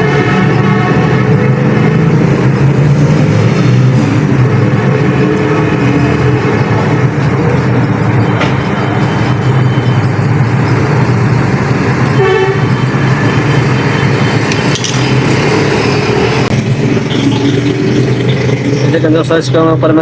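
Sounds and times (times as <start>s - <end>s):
vehicle horn toot: 0.0s - 1.6s, 12.1s - 14.1s
street traffic: 0.0s - 20.0s.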